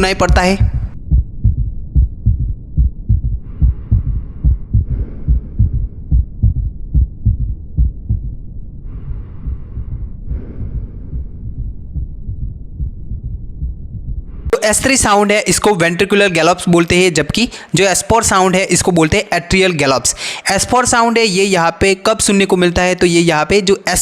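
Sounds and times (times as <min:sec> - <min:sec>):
heartbeat low thuds: 0:00.0 - 0:14.6.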